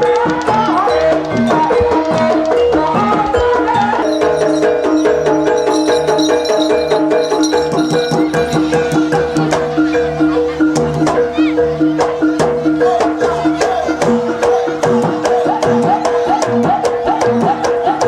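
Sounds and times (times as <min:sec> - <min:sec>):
gamelan-style percussion ensemble: 0:00.0 - 0:17.9
held higher note: 0:04.0 - 0:08.8.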